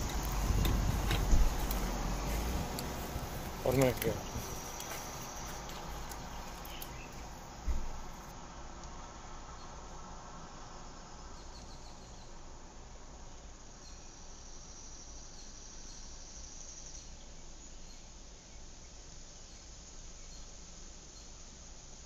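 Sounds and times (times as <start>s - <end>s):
insects chirping: 0.0s - 8.3s, 9.0s - 22.0s
low rumble: 0.0s - 8.3s
high steady insect buzz: 0.0s - 22.0s.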